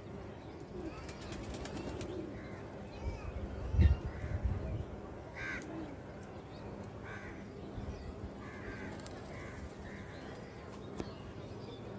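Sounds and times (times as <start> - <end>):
crows cawing: 5.4 - 5.7, 7.0 - 7.4, 8.4 - 10.2.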